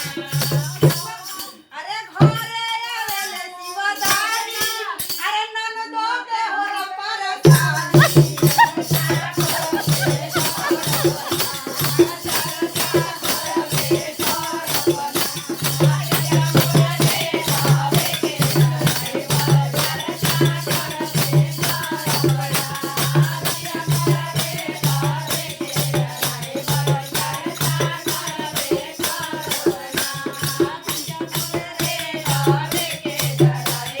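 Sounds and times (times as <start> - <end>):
shaken rattle percussion: 0.0 - 5.5, 6.7 - 34.0
voice singing: 7.7 - 12.1.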